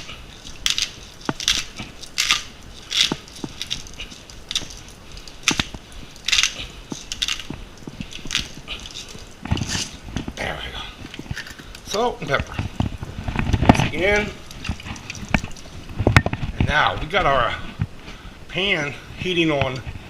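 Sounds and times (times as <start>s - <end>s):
salt grinder crunching: 0.0s - 10.1s.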